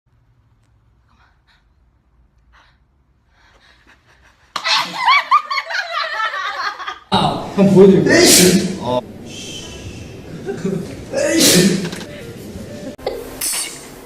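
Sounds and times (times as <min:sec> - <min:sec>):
person sneezing: 0:10.5 - 0:12.1.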